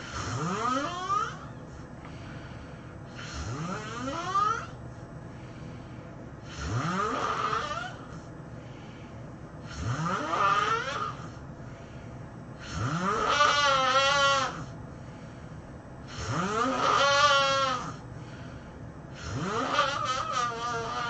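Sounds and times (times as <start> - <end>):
person snoring: 0.0 - 1.5, 3.1 - 4.8, 6.4 - 8.2, 9.6 - 11.4, 12.6 - 14.8, 16.1 - 18.0, 19.1 - 21.0.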